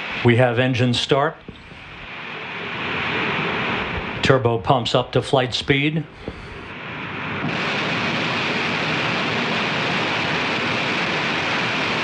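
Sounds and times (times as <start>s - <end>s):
rocket engines roaring: 0.0s - 12.0s.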